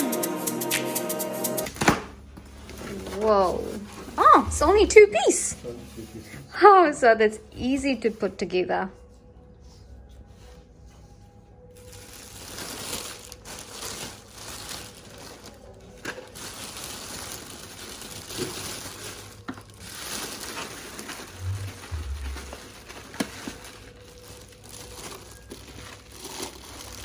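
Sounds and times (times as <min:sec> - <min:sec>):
packaging crinkling and rustling: 0:11.8 - 0:27.0
brief low thud: 0:21.4 - 0:22.6.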